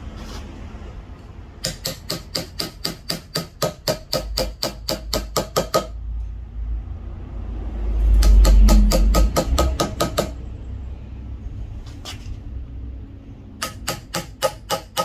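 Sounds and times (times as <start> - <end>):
mallet tapping chisel into wood: 1.6 - 6.0, 8.2 - 10.4, 13.6 - 15.0.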